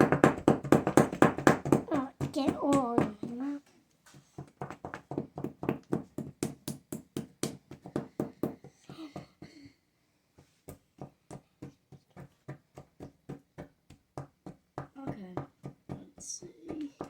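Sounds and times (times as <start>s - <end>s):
wooden mallet tapping chisel: 0.0s - 3.4s, 10.7s - 17.0s.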